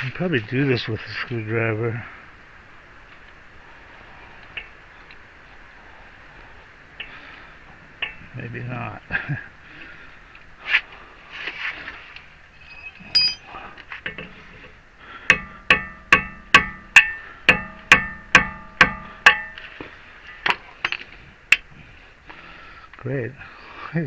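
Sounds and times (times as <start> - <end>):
hammer striking metal: 12.9 - 13.4, 15.3 - 19.7.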